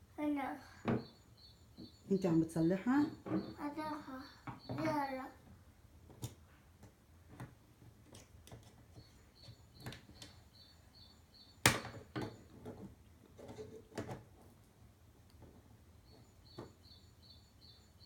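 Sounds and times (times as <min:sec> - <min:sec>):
bird chirping: 0:00.2 - 0:05.4, 0:08.9 - 0:12.6, 0:16.0 - 0:18.0.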